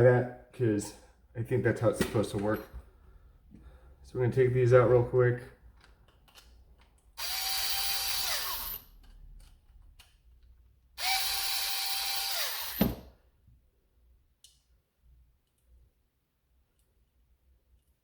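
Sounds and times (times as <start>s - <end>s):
electric screwdriver whine: 7.2s - 8.9s, 11.0s - 13.0s.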